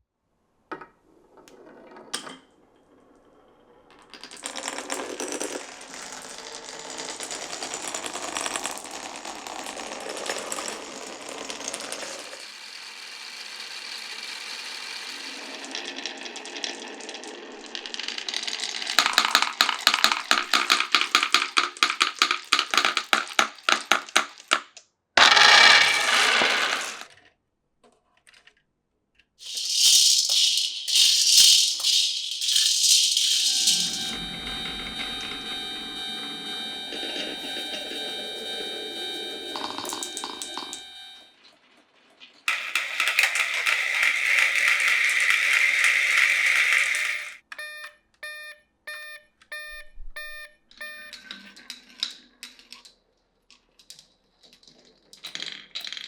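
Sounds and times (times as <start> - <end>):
marbles rolling on wooden track: 0.7 - 28.6, 29.4 - 35.4, 36.9 - 47.4, 53.6 - 56.0
marbles clicking: 3.9 - 27.1, 29.4 - 35.4, 39.1 - 40.9, 42.5 - 47.4
marbles rattling into pile: 3.9 - 27.1, 29.4 - 34.4, 42.4 - 47.4.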